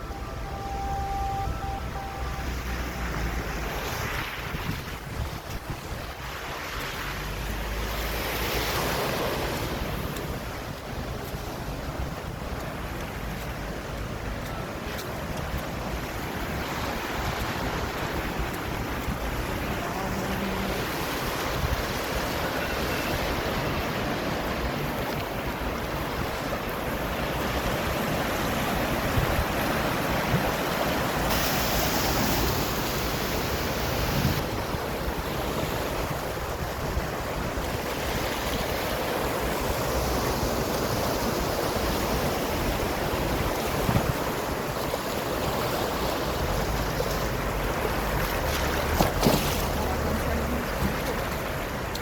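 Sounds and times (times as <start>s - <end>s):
floodwater rushing: 0.0s - 52.0s.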